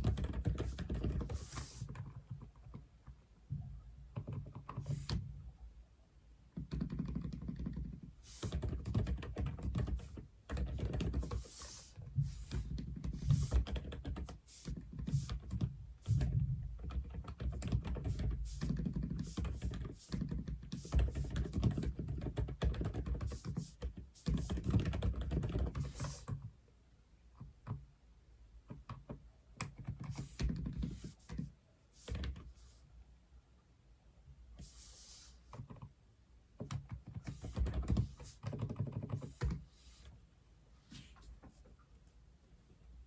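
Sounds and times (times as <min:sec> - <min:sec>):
mechanical keyboard typing: 0:00.0 - 0:02.8, 0:04.2 - 0:05.2, 0:06.6 - 0:11.4, 0:12.6 - 0:26.4, 0:36.6 - 0:39.6.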